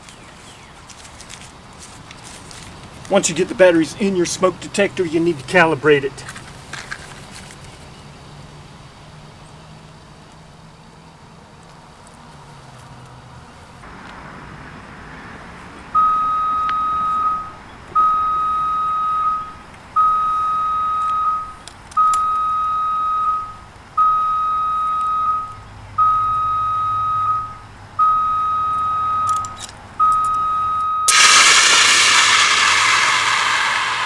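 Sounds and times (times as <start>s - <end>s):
smoke detector alarm beeping: 16.0s - 29.3s.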